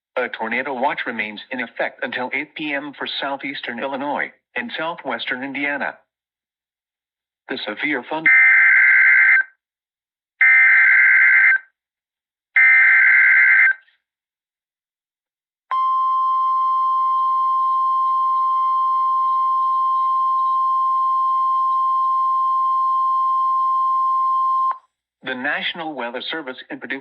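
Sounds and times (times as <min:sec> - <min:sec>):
single-pitch warning alarm tone: 0:15.7 - 0:24.8.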